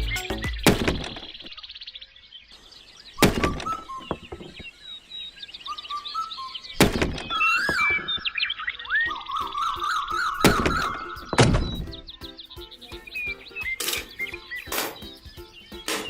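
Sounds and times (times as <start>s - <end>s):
heavy thuds: 0.6s - 1.4s, 3.2s - 4.6s, 6.8s - 8.2s, 10.4s - 12.1s
high chirping and whistling: 2.7s - 16.0s.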